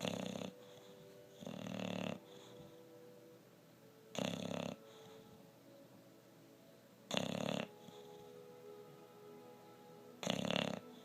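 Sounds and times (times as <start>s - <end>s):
dog snoring loudly: 0.0s - 2.8s, 4.1s - 5.4s, 7.1s - 8.4s, 10.2s - 11.0s.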